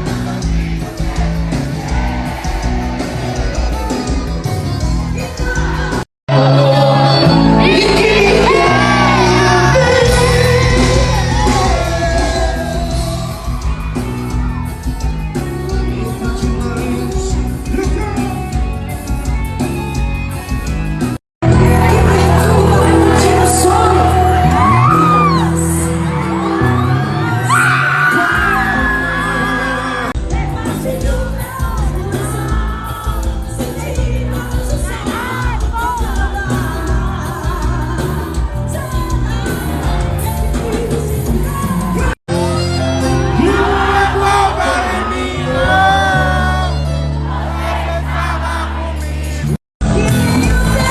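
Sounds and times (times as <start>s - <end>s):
crowd yelling: 0.0s - 17.0s, 21.4s - 30.2s, 41.5s - 49.6s
live band playing: 0.0s - 50.9s
person singing: 5.2s - 13.4s, 21.4s - 39.4s, 41.7s - 46.9s.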